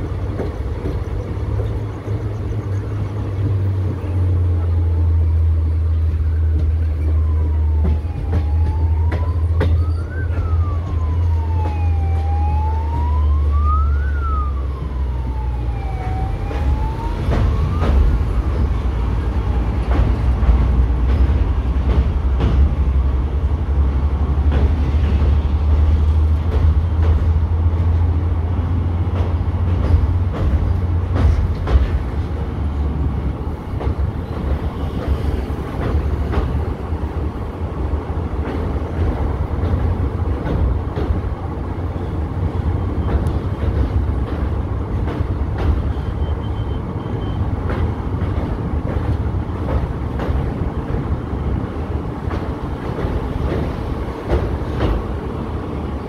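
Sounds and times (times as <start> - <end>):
train coaches rumbling: 0.0 - 56.0
wheels clicking on rails: 15.4 - 56.0.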